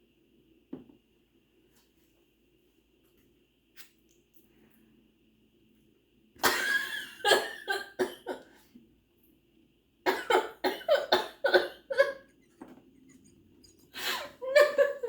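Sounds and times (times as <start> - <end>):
person coughing: 10.1 - 12.3.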